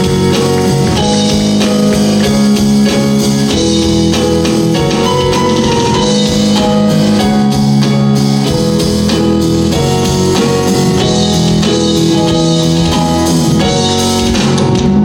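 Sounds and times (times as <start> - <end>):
steady drum beat: 0.0 - 15.0.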